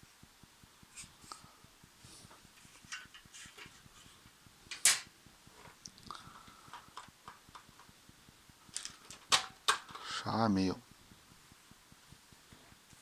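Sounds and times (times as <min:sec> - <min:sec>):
plastic clicks and rustles: 0:04.7 - 0:08.0, 0:08.7 - 0:10.2.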